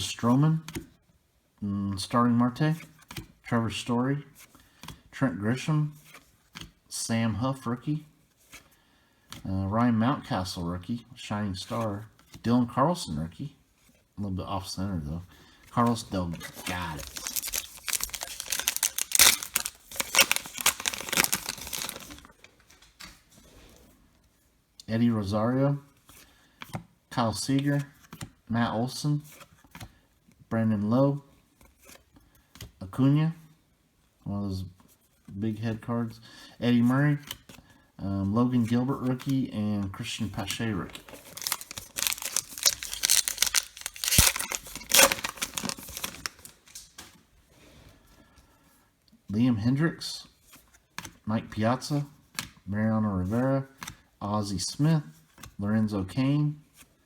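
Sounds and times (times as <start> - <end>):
wrapper tearing and crinkling: 16.4 - 22.3, 41.0 - 46.9.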